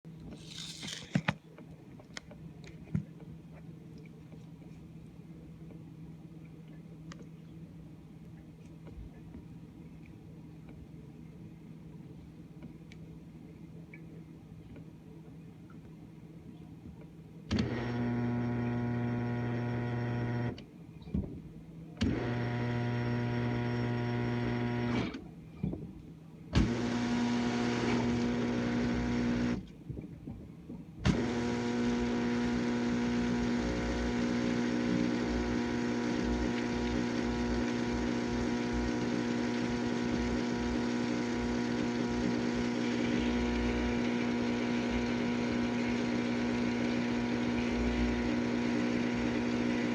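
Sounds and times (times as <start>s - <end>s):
dishwasher pump motor humming: 17.5s - 20.6s, 22.0s - 25.0s, 26.6s - 29.6s, 31.1s - 49.9s.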